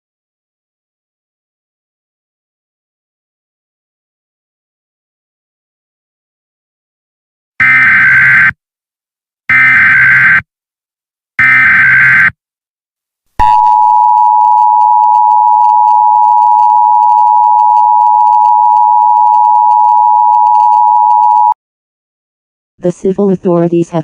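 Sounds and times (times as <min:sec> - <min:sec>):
steady two-tone alert signal: 0:09.5 - 0:10.4, 0:11.4 - 0:12.3.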